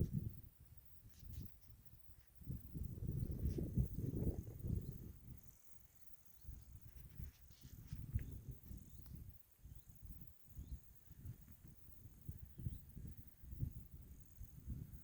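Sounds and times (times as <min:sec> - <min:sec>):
faint high chirps: 0:00.0 - 0:15.0
faint high hiss: 0:00.0 - 0:15.0.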